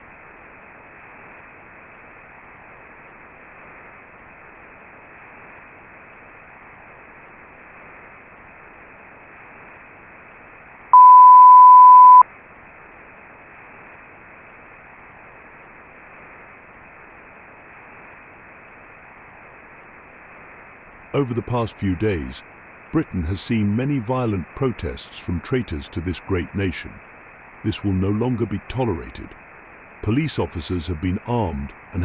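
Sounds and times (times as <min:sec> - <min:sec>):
broadcast static hiss: 0:00.0 - 0:32.0
loud steady beep: 0:11.0 - 0:12.2.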